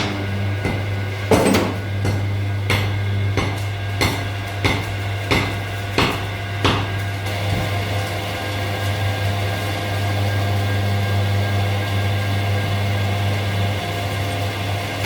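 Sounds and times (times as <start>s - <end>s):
hammer striking metal: 0.0s - 7.0s
low machine hum: 0.0s - 15.0s.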